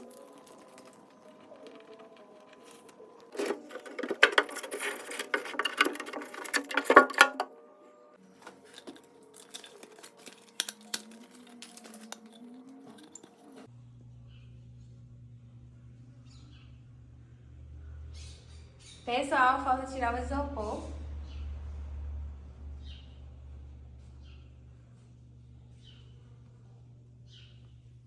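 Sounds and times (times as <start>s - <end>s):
packaging crackling and rustling: 0.0s - 7.4s, 8.2s - 13.7s
steady low hum: 10.6s - 28.0s.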